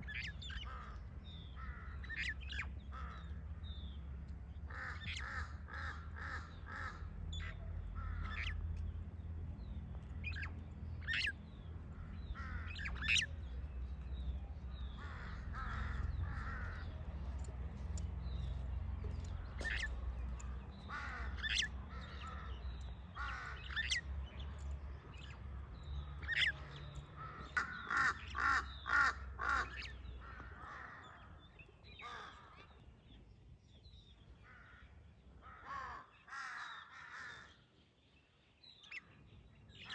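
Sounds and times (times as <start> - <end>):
harsh crow-like bird calls: 0.0 - 9.0, 9.6 - 33.1, 33.9 - 37.8
low steady rumble: 0.0 - 31.5.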